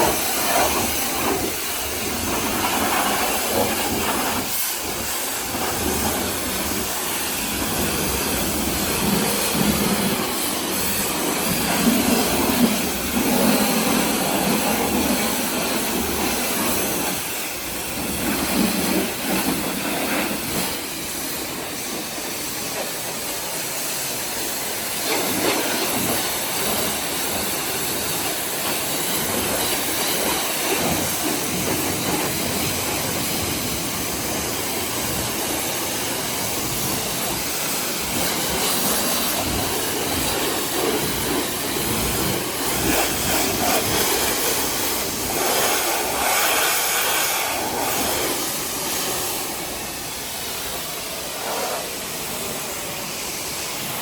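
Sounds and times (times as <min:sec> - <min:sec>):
pressure washer spraying water: 0:00.0 - 0:54.0.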